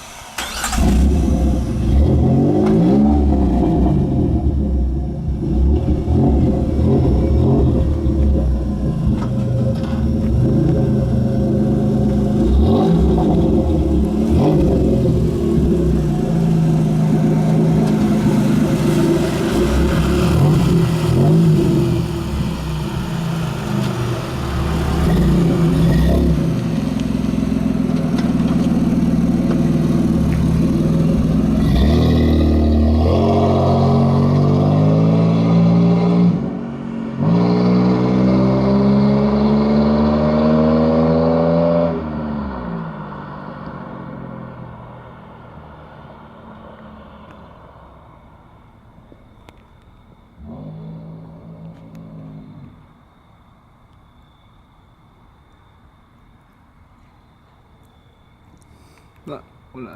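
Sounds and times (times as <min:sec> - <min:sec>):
car engine revving under load: 0:00.0 - 0:47.9.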